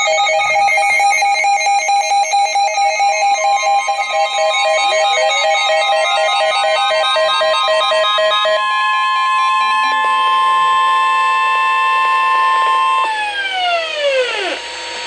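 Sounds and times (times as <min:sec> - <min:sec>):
steady high-pitched alert tone: 0:00.0 - 0:08.6.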